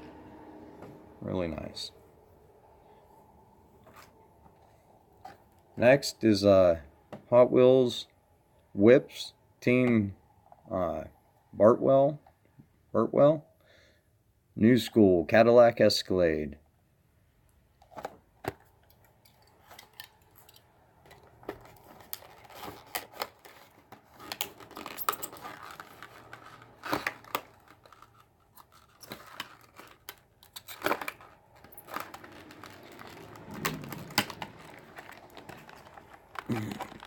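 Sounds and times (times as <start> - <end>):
stiff plastic and cardboard crinkling: 17.8 - 37.0.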